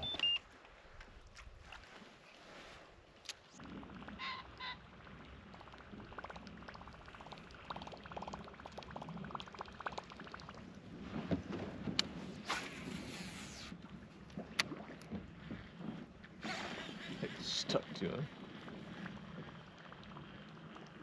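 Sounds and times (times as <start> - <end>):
short electronic beeps: 0.0 - 0.4
water lapping against kayak hull: 0.0 - 21.0.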